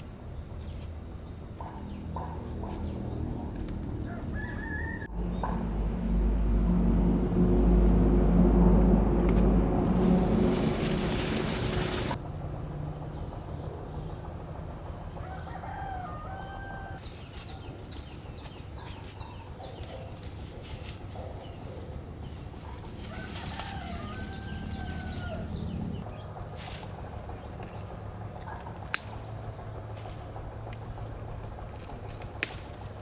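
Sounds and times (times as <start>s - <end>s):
rooster crowing: 3.4s - 5.6s, 15.0s - 17.1s, 22.1s - 26.0s.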